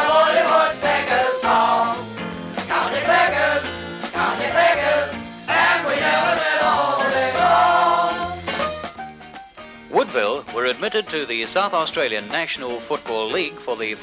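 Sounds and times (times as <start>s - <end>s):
choir singing jingle-style song: 0.0s - 8.4s
instrumental backing: 0.0s - 14.0s.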